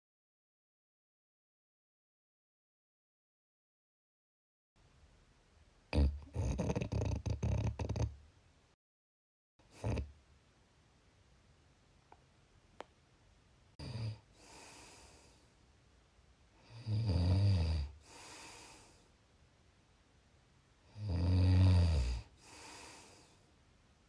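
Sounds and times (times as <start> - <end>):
person snoring: 5.9 - 8.2, 9.7 - 10.1, 13.8 - 15.4, 16.6 - 19.0, 20.9 - 23.4
breathy out-breath: 14.3 - 15.5, 18.0 - 19.1, 22.3 - 23.4.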